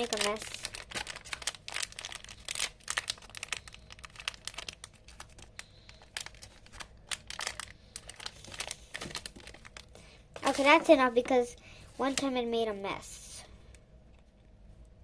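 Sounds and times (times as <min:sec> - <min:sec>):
plastic packet crinkling: 0:00.0 - 0:11.3.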